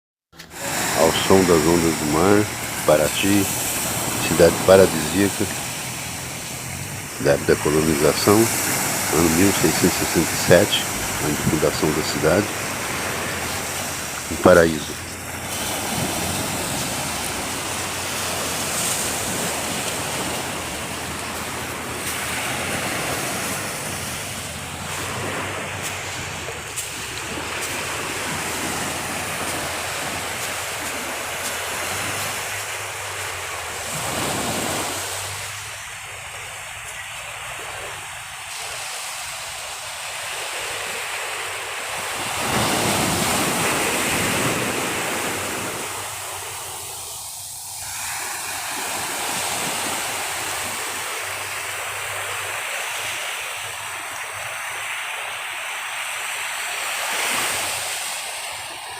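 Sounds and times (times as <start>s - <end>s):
sea waves washing ashore: 0.4s - 58.9s.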